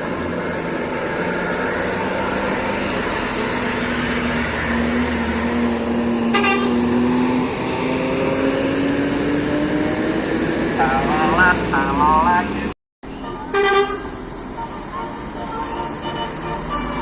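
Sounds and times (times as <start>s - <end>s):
bus musical horn: 6.3s - 6.9s, 13.1s - 17.0s.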